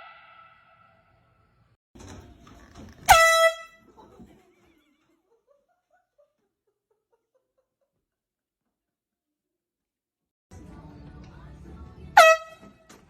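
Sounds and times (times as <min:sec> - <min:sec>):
air horn blast: 0:00.0 - 0:00.9, 0:03.1 - 0:03.8, 0:12.1 - 0:12.8.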